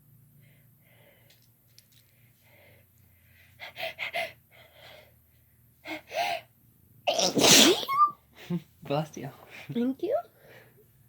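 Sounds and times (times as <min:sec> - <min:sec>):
woman sneezing: 0:07.1 - 0:08.0.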